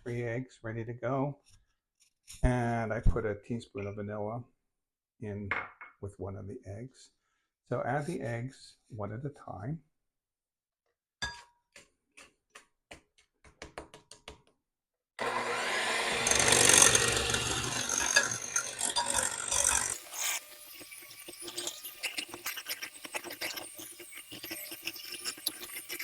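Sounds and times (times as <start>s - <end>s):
electric mixer beating: 15.2s - 26.0s.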